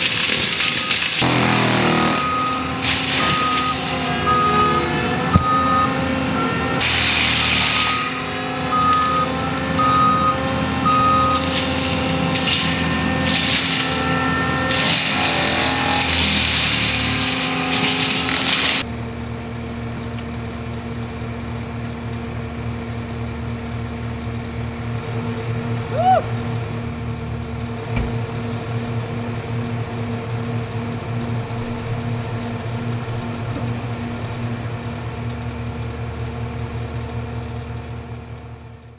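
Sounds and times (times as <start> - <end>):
forestry mulcher noise: 0.0 - 38.8
diesel engine running: 0.0 - 38.9
reversing beeps: 2.1 - 2.6, 3.2 - 6.6, 7.7 - 11.4.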